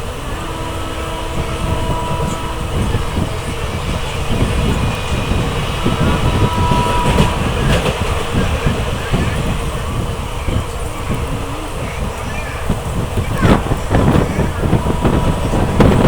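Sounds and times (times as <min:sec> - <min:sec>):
train rumbling on track: 0:00.0 - 0:16.0.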